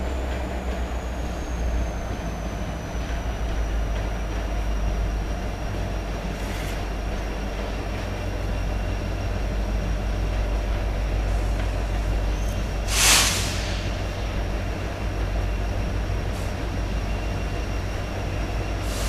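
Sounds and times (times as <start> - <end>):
freight train passing: 0.0 - 19.0
loud hiss: 12.8 - 14.1.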